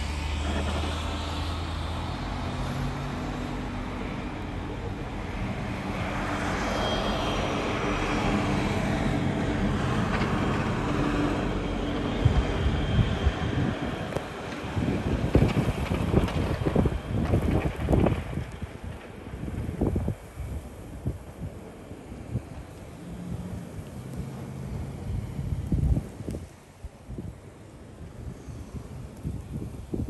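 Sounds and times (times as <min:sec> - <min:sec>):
vehicle passing hiss: 0:00.0 - 0:10.0, 0:10.7 - 0:30.0
vehicle engine humming: 0:00.0 - 0:30.0.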